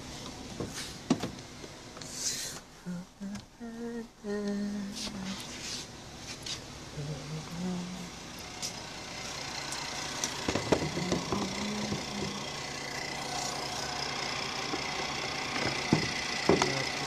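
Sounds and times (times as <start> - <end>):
car engine idling: 0.0 - 17.0
sharp clicks and knocks: 15.6 - 16.8.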